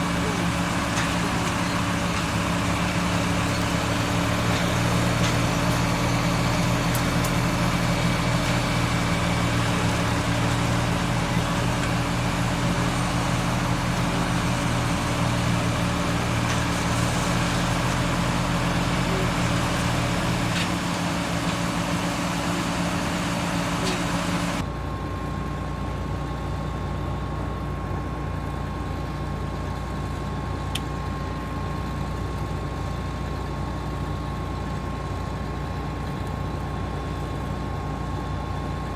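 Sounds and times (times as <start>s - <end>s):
harvester engine running: 0.0s - 24.7s.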